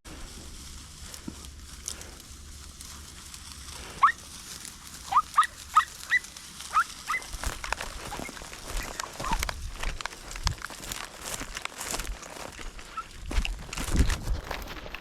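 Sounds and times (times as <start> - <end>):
dog yelping: 4.0 - 4.2, 5.0 - 7.4, 8.0 - 9.4, 12.9 - 13.2.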